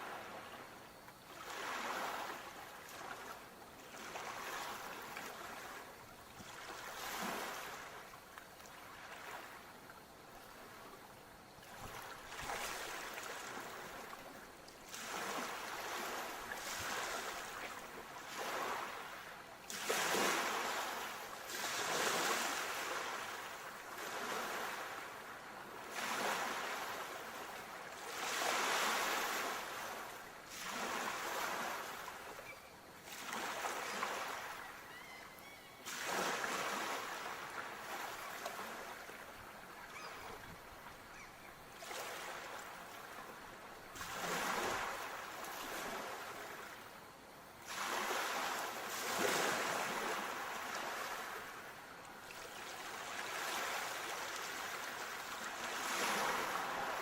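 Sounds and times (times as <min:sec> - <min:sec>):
sea waves washing on shore: 0:00.0 - 0:35.2, 0:35.8 - 0:57.0.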